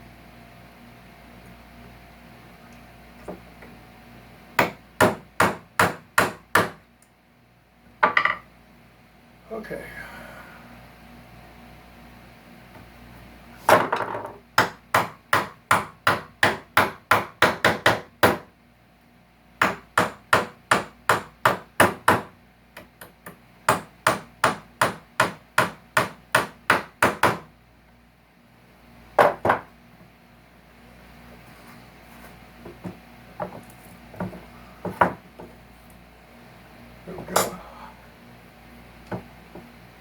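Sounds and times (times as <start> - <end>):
hammer striking wood: 4.6 - 6.8, 14.6 - 18.5, 19.6 - 22.3, 23.7 - 27.5.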